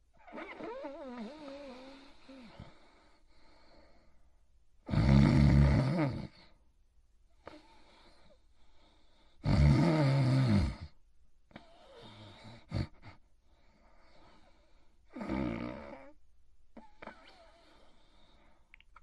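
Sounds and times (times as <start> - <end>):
loud snoring: 0.3 - 2.8, 4.8 - 6.5, 9.4 - 11.0, 15.1 - 16.2
soft breaths: 0.4 - 4.5, 7.3 - 9.4, 11.5 - 15.2, 16.0 - 19.0.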